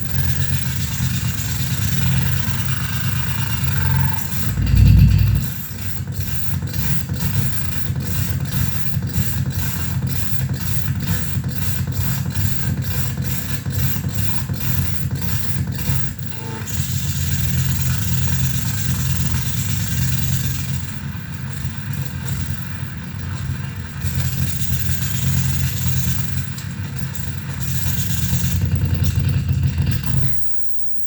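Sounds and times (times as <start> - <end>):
low bass drone: 3.6 - 5.7.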